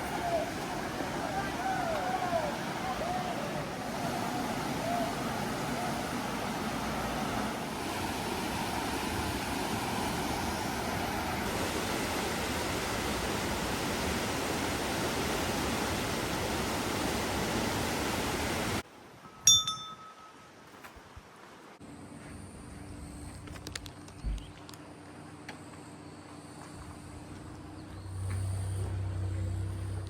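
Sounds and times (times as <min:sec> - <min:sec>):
steady rushing noise: 0:00.0 - 0:18.8
ringing chime ding: 0:19.3 - 0:20.5.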